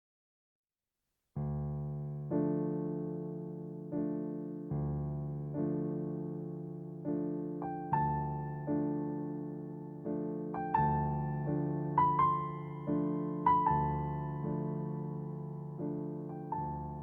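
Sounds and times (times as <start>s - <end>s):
slow electric piano chords: 1.7s - 17.0s.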